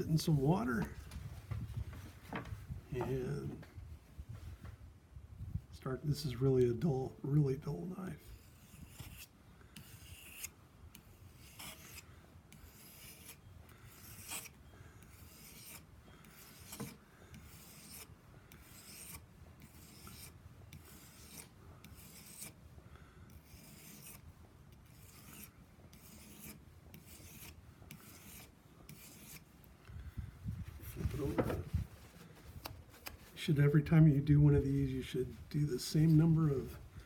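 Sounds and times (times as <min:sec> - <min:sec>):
knife rasping on sharpening stone: 0:08.3 - 0:10.5, 0:11.3 - 0:14.5, 0:15.1 - 0:22.6, 0:23.4 - 0:24.2, 0:24.9 - 0:29.4.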